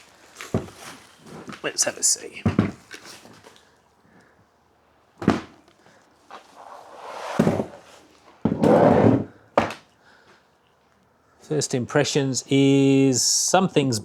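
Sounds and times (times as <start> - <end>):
loud scrape: 6.3 - 9.4.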